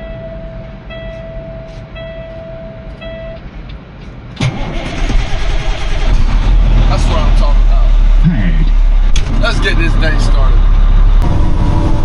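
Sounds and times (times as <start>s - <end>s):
diesel engine cranking and running: 4.3s - 12.0s.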